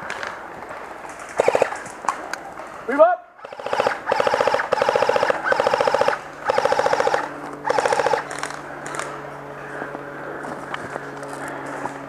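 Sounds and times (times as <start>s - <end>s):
airsoft gun firing bursts: 1.4s - 1.9s, 3.4s - 9.0s.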